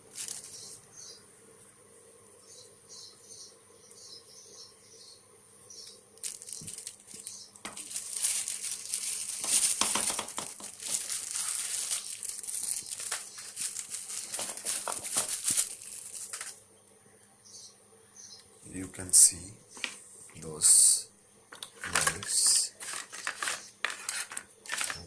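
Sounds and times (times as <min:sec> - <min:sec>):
plastic packaging crinkling: 0:00.0 - 0:00.8, 0:06.2 - 0:16.6, 0:21.6 - 0:25.0.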